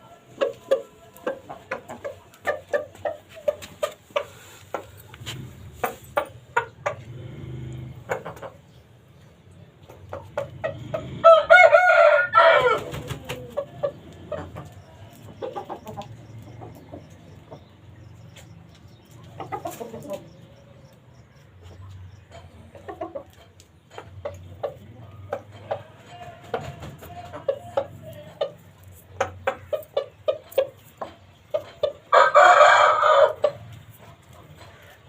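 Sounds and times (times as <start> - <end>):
chickens clucking: 0.0 - 35.0
rooster crowing: 11.2 - 13.0, 32.1 - 33.6.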